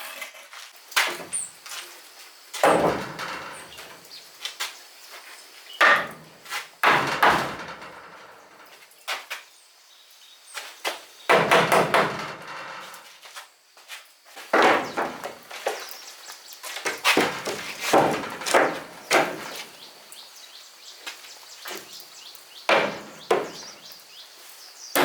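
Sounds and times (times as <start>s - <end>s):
heavy wooden knocks and thuds: 2.6s - 4.0s, 5.8s - 8.7s, 11.3s - 13.0s, 14.5s - 15.8s, 17.0s - 19.8s, 22.7s - 23.8s.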